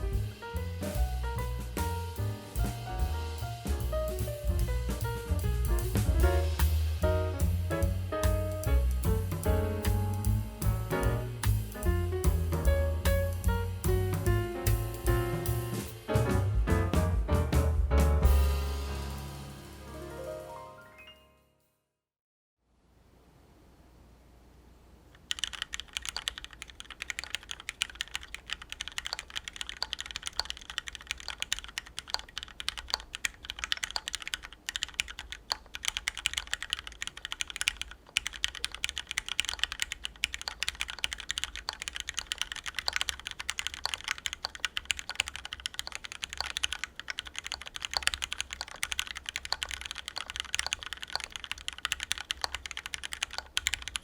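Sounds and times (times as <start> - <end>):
fast mechanical keyboard typing: 25.2 - 54.0.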